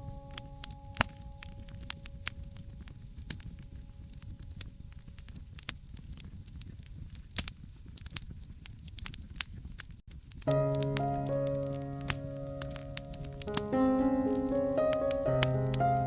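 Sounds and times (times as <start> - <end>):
piano chord: 0.0 - 4.2, 10.5 - 16.0
fireplace fire crackling: 0.0 - 16.0.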